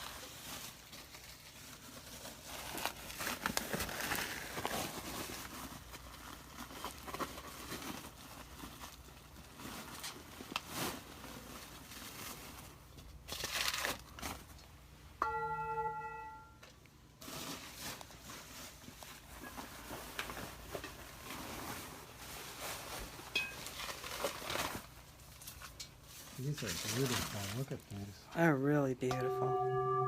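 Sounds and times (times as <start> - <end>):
packing paper crinkling and tearing: 0.0 - 14.7, 17.2 - 28.2
singing bowl ringing: 15.2 - 16.6, 29.1 - 30.0.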